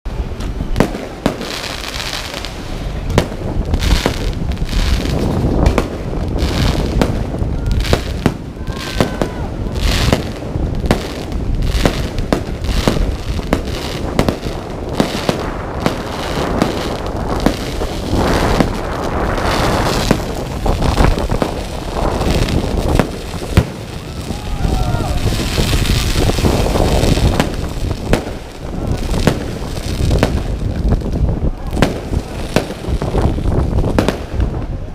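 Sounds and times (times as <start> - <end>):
fireworks bangs: 0.1 - 34.9
fireworks crackling: 0.1 - 34.9.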